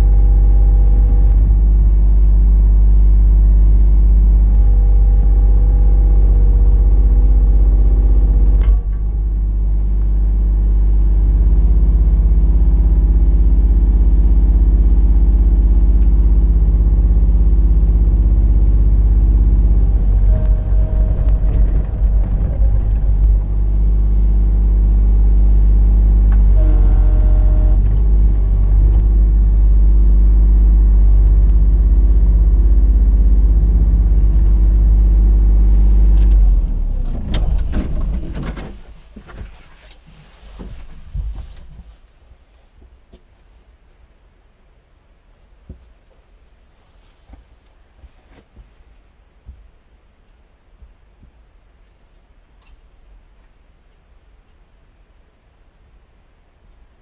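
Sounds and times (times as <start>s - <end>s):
excavator engine running: 0.0s - 39.4s.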